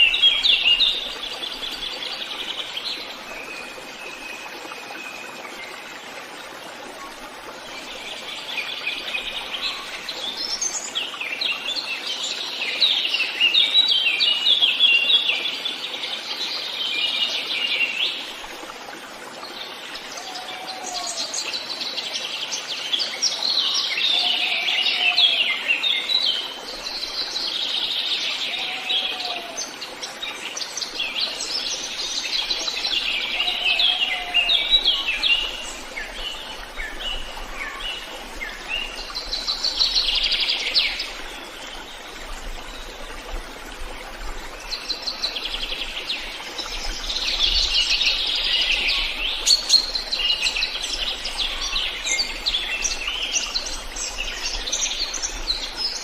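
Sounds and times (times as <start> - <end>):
low arching bird call: 33.3 - 35.0.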